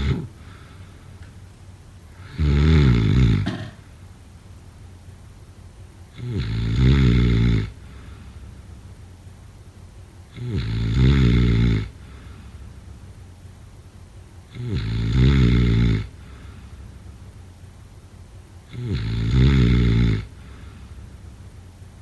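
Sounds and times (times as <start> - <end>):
person snoring: 0.0 - 0.8, 2.2 - 3.8, 6.2 - 8.1, 10.3 - 12.3, 14.5 - 16.5, 18.7 - 20.8
quiet breathing: 0.0 - 4.0, 6.0 - 8.8, 10.2 - 22.0.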